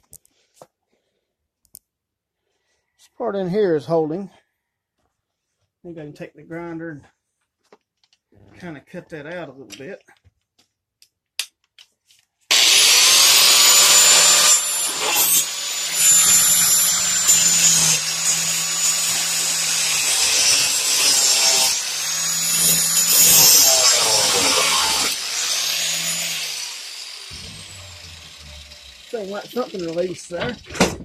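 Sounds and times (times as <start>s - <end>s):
angle grinder cutting metal: 12.5s - 30.8s.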